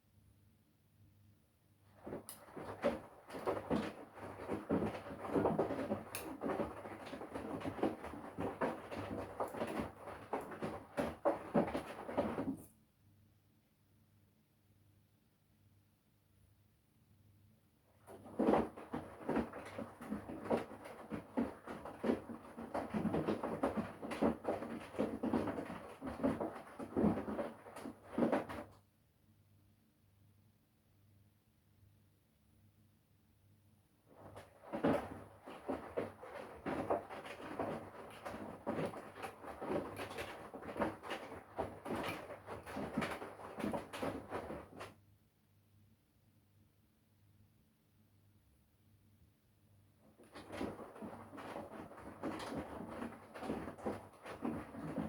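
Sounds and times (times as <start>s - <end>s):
soft thuds of laundry: 2.0s - 12.6s, 18.1s - 28.8s, 34.1s - 44.9s, 50.2s - 55.0s
washing machine drum sloshing laundry: 2.0s - 12.7s, 18.0s - 28.8s, 34.1s - 45.0s, 50.1s - 55.0s
clothes thudding: 34.2s - 44.9s, 50.3s - 55.0s.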